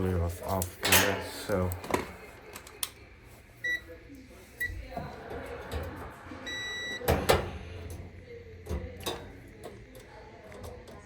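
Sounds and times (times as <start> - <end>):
electronic beep: 6.5 - 7.0.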